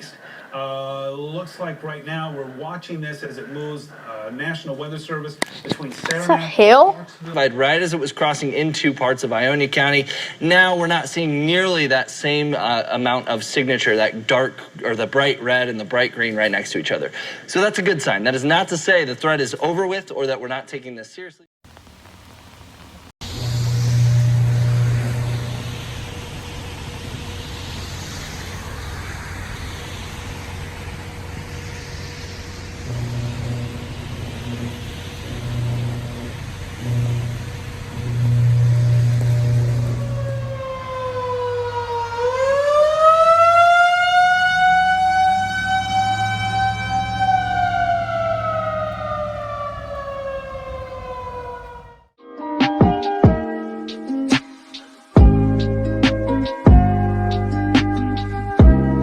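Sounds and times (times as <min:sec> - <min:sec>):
steady rushing noise: 0:21.7 - 0:42.5
low hum: 0:21.7 - 0:52.1
tornado warning siren wailing: 0:21.7 - 0:52.2.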